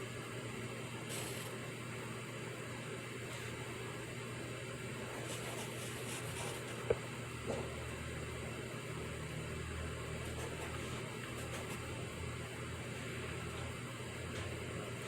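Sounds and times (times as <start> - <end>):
low room hum: 0.0 - 15.0
pencil writing on paper: 5.2 - 6.9, 10.3 - 11.9.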